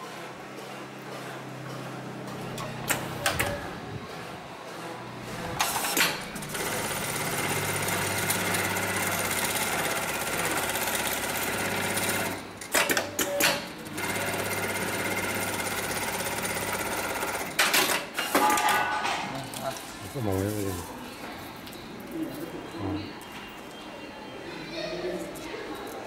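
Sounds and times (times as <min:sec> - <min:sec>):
sewing machine stitching: 0:05.6 - 0:18.4.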